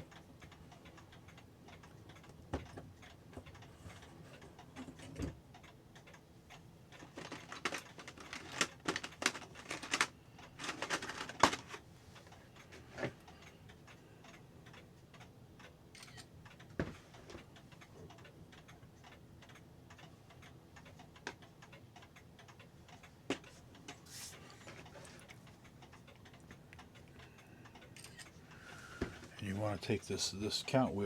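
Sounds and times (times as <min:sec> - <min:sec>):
small metal parts clicking and clinking: 0:07.0 - 0:11.8.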